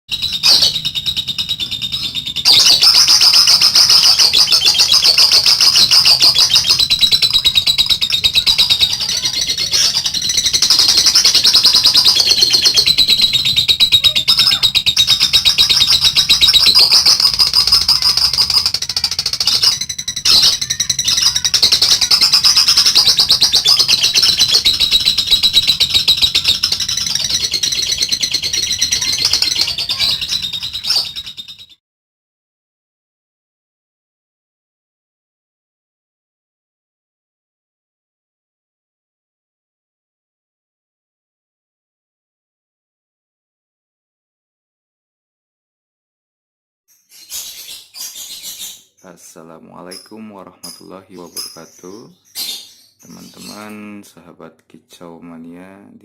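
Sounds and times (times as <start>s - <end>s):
lovebird chattering trill: 0.1s - 31.8s, 46.9s - 49.2s, 49.8s - 53.9s.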